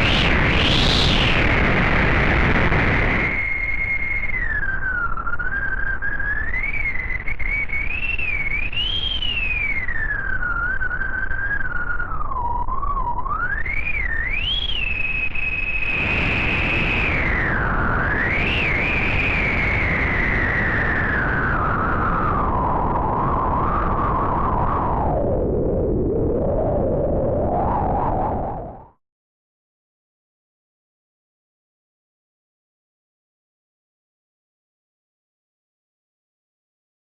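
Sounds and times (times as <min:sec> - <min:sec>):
synthesised howling wind: 0:00.0 - 0:29.0.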